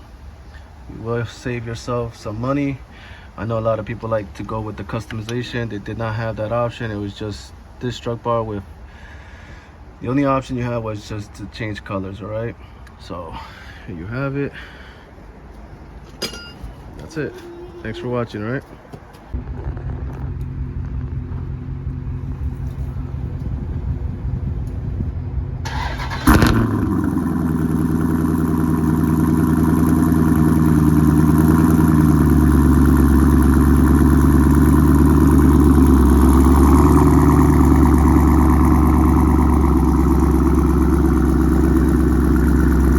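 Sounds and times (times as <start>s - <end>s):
car engine starting and idling: 0.0s - 8.6s, 19.3s - 42.9s.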